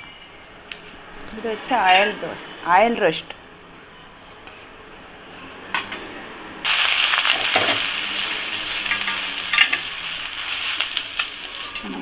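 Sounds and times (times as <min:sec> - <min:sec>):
sizzling on a hot pan: 0:06.6 - 0:12.0.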